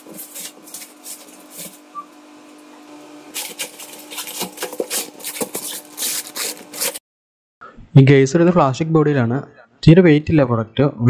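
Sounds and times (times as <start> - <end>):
plastic packaging handling noise: 0.0 - 7.0.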